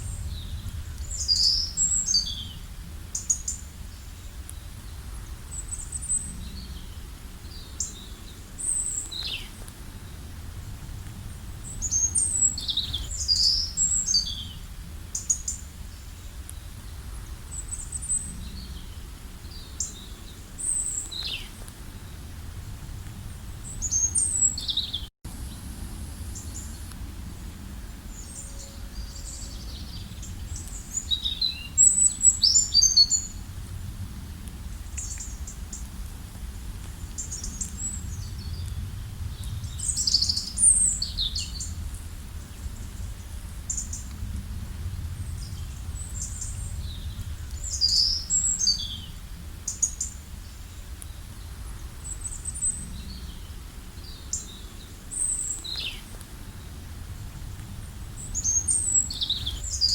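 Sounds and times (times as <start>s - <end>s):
birds chirping and singing: 0.0s - 3.6s, 11.7s - 14.6s, 45.4s - 49.1s, 58.2s - 59.9s.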